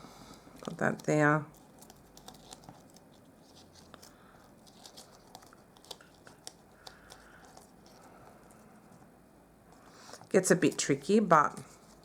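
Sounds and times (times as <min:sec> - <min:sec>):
paper pieces ticking and rustling: 0:00.6 - 0:08.6.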